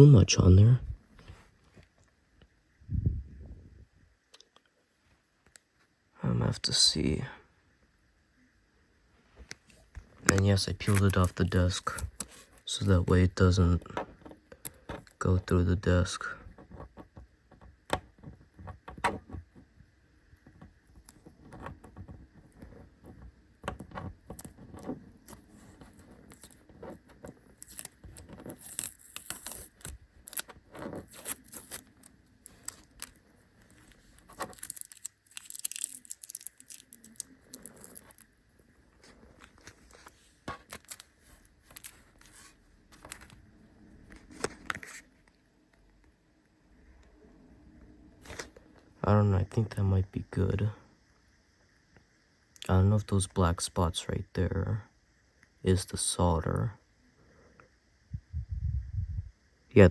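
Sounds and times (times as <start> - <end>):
small tools clicking and scraping: 20.5 - 38.3.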